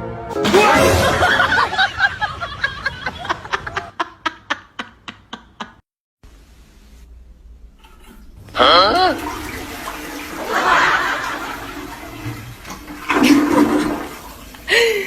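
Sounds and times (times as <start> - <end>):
person laughing: 0.6 - 5.8, 14.6 - 15.0.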